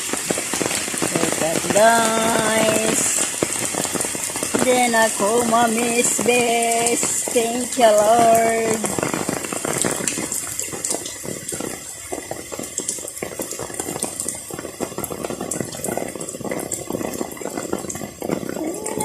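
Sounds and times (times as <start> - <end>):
rain pouring and splashing: 0.0 - 19.0.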